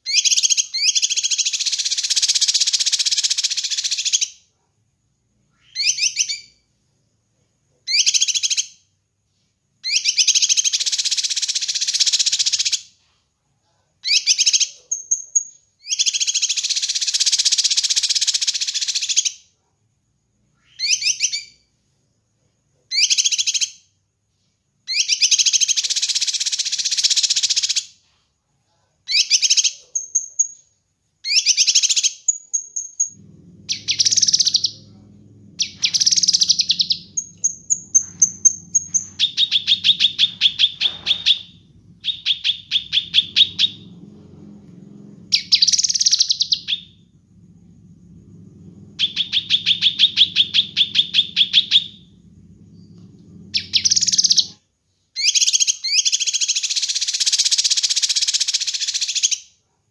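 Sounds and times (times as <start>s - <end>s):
faint low hum: 0.0s - 55.2s
bird chirping trills: 31.3s - 54.6s.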